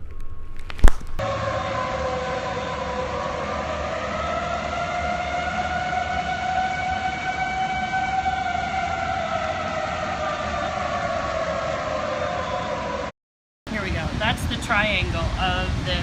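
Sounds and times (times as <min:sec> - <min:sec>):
warning siren wailing: 0:01.2 - 0:13.1.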